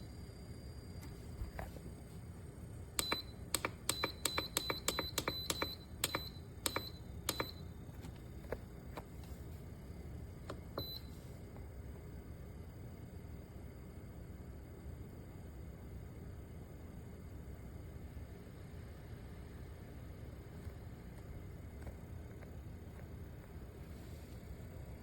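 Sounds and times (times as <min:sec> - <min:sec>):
control panel button clicks: 0:03.0 - 0:08.2.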